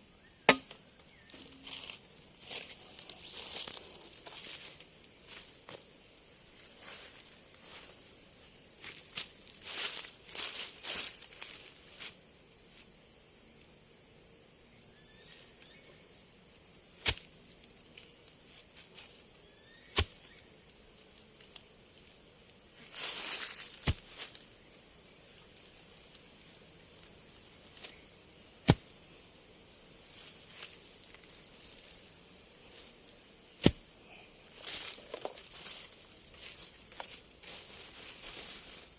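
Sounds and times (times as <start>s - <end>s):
forest insects droning: 0.0s - 38.9s
sharp knocks: 0.5s - 0.8s.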